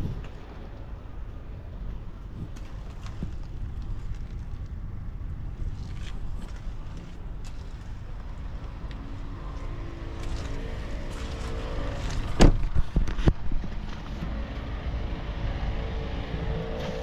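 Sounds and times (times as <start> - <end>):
diesel engine droning: 5.3 - 17.0.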